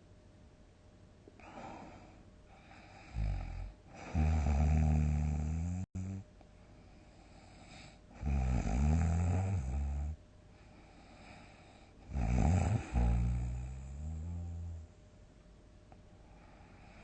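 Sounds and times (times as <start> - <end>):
person snoring loudly: 3.1 - 6.2, 8.2 - 10.2, 12.1 - 14.8.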